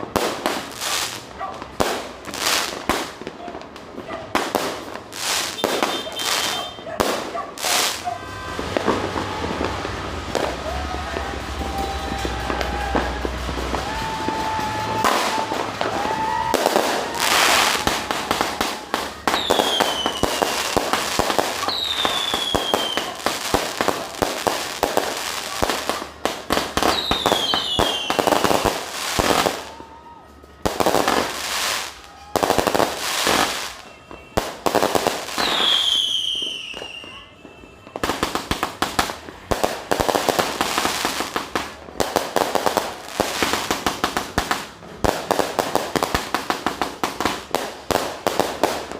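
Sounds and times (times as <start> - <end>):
fireworks crackling bangs: 0.0 - 48.9
falling firework whistles: 5.2 - 39.1.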